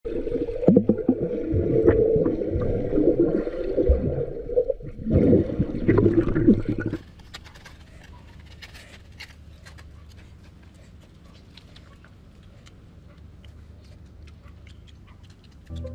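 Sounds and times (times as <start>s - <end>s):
muffled water gurgling and sloshing: 0.0s - 7.0s.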